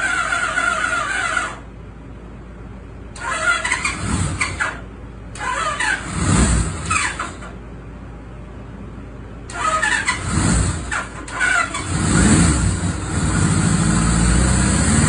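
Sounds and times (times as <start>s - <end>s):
motorcycle engine cranking on starter: 0.0s - 1.6s, 3.2s - 4.8s, 5.4s - 7.6s, 9.5s - 15.0s.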